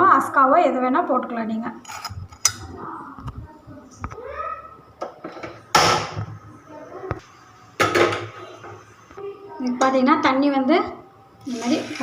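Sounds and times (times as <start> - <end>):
pots and utensils knocking: 7.8 - 8.4.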